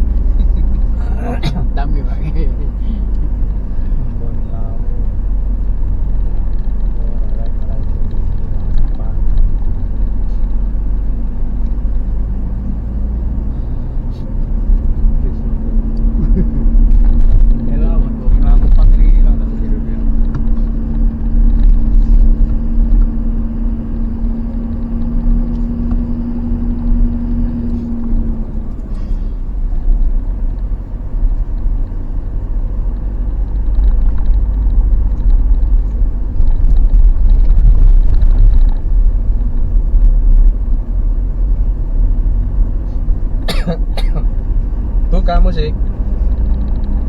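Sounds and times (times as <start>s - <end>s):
road rumble: 0.0s - 47.0s
vehicle engine drone: 0.0s - 47.0s.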